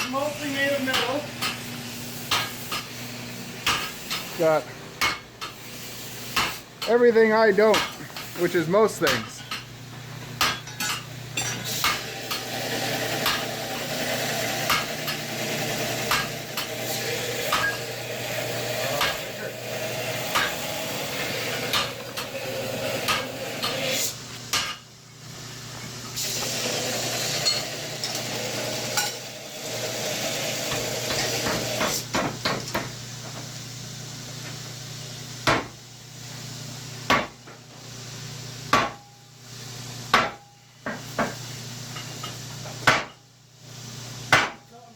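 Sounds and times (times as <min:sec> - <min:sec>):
hammer striking steel on anvil: 0:00.8 - 0:01.7, 0:02.3 - 0:02.9, 0:03.6 - 0:04.3, 0:05.0 - 0:05.6, 0:10.4 - 0:12.5, 0:13.1 - 0:13.6, 0:14.5 - 0:15.3, 0:16.0 - 0:17.9, 0:18.8 - 0:19.4, 0:20.3 - 0:20.7, 0:21.6 - 0:22.3, 0:23.0 - 0:24.8, 0:38.7 - 0:39.2, 0:40.1 - 0:41.4, 0:42.0 - 0:43.2, 0:44.3 - 0:44.7.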